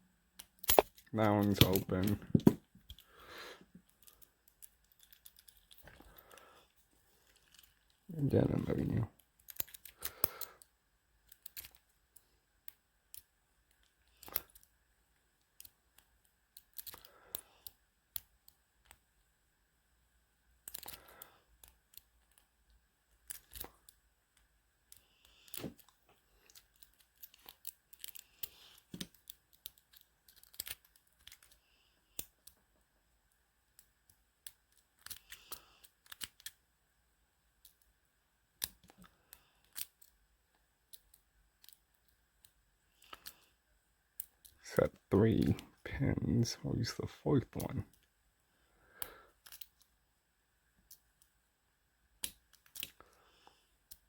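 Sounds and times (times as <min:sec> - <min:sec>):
lock pick clicking and scraping: 0:00.4 - 0:03.1, 0:03.8 - 0:06.2, 0:09.4 - 0:10.4, 0:11.2 - 0:11.9, 0:20.6 - 0:22.4, 0:24.9 - 0:31.6, 0:33.8 - 0:36.6, 0:38.6 - 0:40.2.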